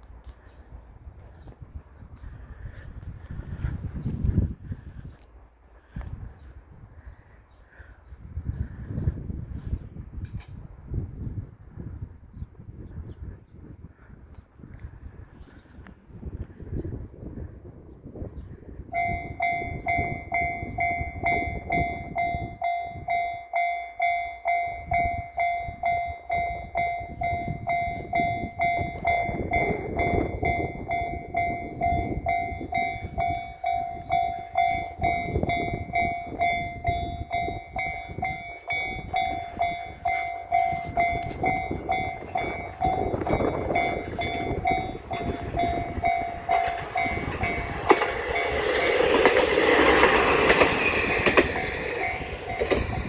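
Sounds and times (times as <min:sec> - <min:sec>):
train rumble: 0:14.6 - 0:53.0
level crossing bell ringing: 0:19.0 - 0:49.1.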